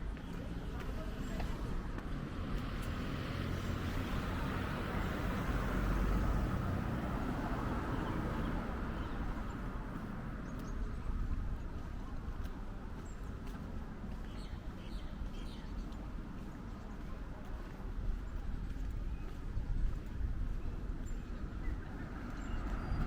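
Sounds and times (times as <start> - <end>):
car passing: 1.6 - 10.4, 21.5 - 23.0.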